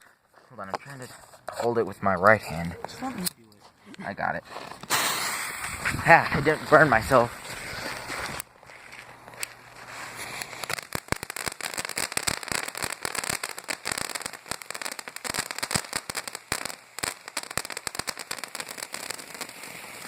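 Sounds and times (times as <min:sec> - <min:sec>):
firework fountain hissing and crackling: 0:04.2 - 0:20.0.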